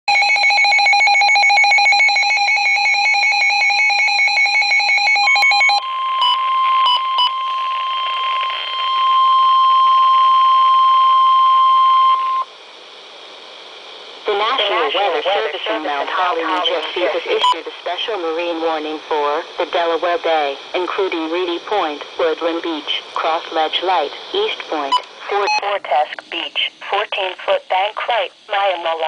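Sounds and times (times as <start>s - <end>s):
radio hiss: 7.4s - 9.2s, 12.3s - 29.0s.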